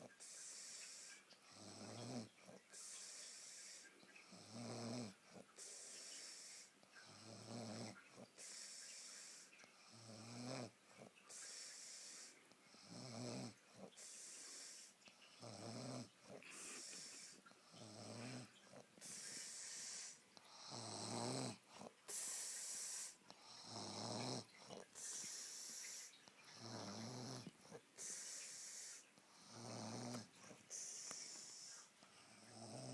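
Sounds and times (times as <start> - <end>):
girl snoring: 7.0 - 8.0, 9.9 - 10.8, 12.8 - 13.9, 15.4 - 32.9.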